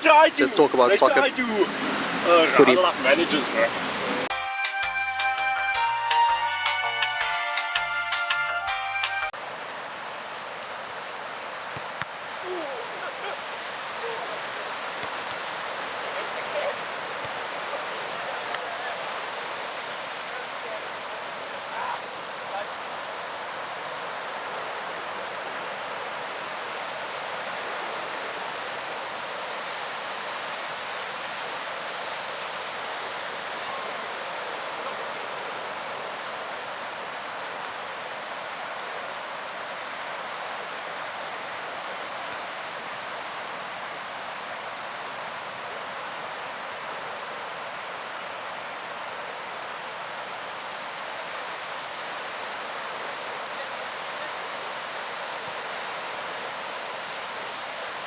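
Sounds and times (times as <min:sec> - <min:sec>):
surf rushing on beach: 0:00.0 - 0:04.3, 0:09.4 - 0:58.0.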